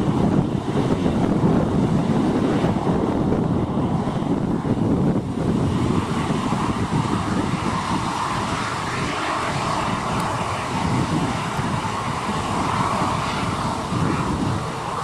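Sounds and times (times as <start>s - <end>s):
airliner engines running: 0.0s - 15.0s
wind buffeting microphone: 0.0s - 15.0s.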